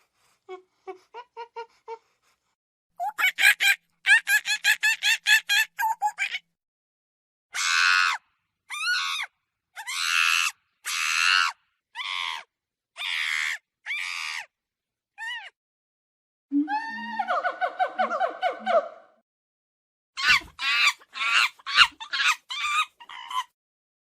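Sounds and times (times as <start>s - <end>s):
harsh animal screams: 7.6s - 14.5s, 20.2s - 23.5s.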